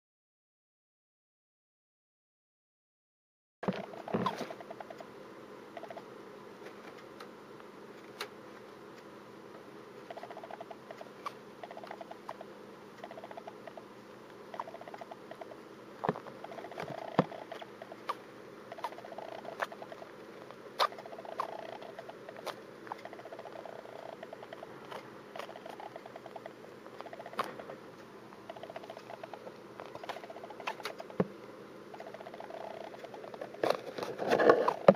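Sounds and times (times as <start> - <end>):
soft rapid pattering: 10.0 - 34.9.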